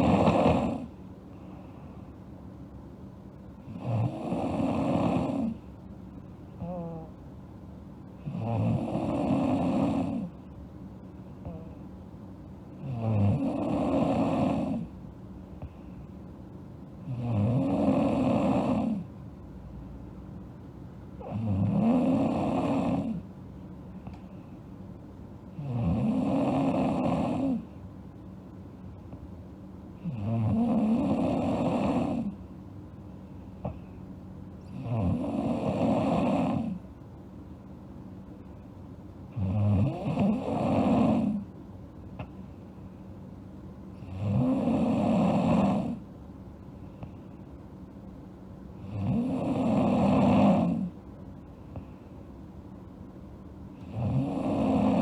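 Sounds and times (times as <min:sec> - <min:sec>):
girl snoring: 0:00.0 - 0:01.0, 0:03.7 - 0:05.6, 0:06.6 - 0:07.2, 0:08.2 - 0:10.4, 0:11.4 - 0:11.8, 0:12.8 - 0:14.9, 0:17.0 - 0:19.1, 0:21.2 - 0:23.2, 0:25.6 - 0:27.7, 0:30.0 - 0:32.4, 0:34.7 - 0:36.8, 0:39.4 - 0:41.4, 0:44.0 - 0:46.0, 0:48.8 - 0:51.0, 0:53.8 - 0:55.0
quiet breathing: 0:00.0 - 0:02.3, 0:11.3 - 0:12.0, 0:12.8 - 0:16.3, 0:23.9 - 0:24.8, 0:30.0 - 0:36.9, 0:46.7 - 0:47.6, 0:48.8 - 0:52.4.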